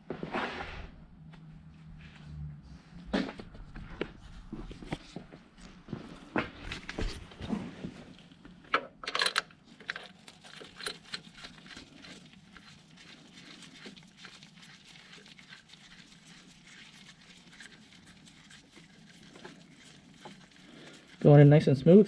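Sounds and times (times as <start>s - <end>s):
light ticks and handling noise: 6.7s - 16.2s
sharp metallic clicks and knocks: 8.7s - 10.1s.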